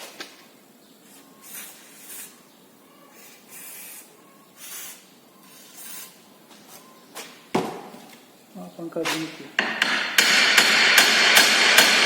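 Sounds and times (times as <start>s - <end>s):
aerosol can spraying: 3.5s - 5.0s.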